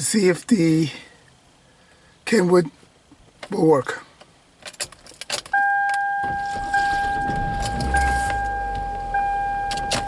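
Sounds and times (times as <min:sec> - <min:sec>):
keys jangling in ignition: 0:04.6 - 0:06.6
electronic warning chime: 0:05.6 - 0:10.0
car engine running: 0:06.2 - 0:10.0.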